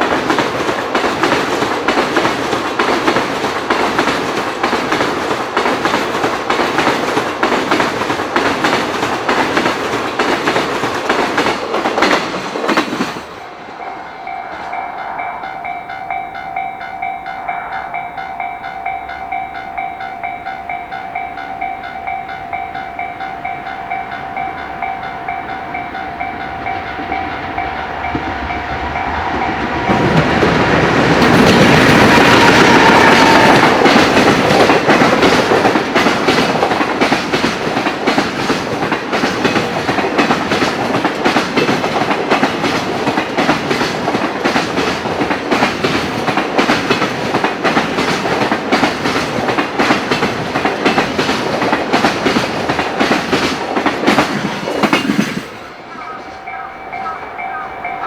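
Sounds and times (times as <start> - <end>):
locomotive passing whine: 11.6 - 36.5, 51.8 - 58.0
level crossing warning bell: 13.4 - 37.1, 55.6 - 58.0
train wheels clattering over rail joints: 28.8 - 55.6.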